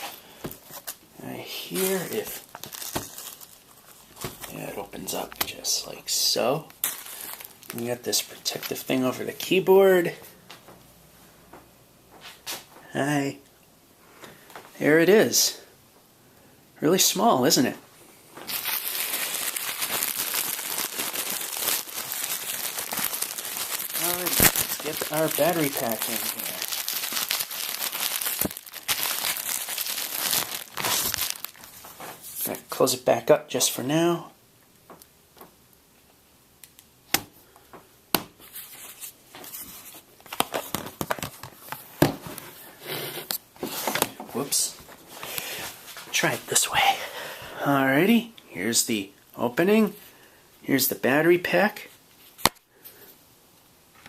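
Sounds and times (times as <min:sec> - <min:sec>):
plastic packaging crinkling: 0:00.0 - 0:08.9, 0:18.4 - 0:32.3, 0:38.6 - 0:42.5.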